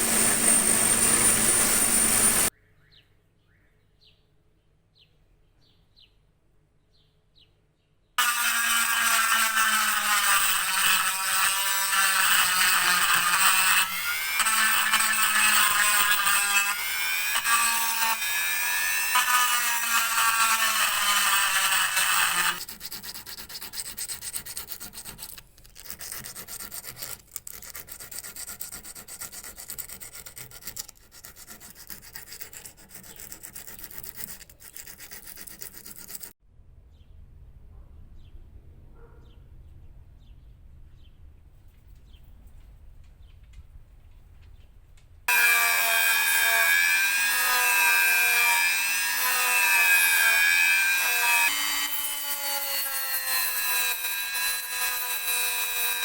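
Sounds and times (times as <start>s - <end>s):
loud wavering machine whine: 0.0s - 2.5s
rubbing and scraping: 8.2s - 36.4s.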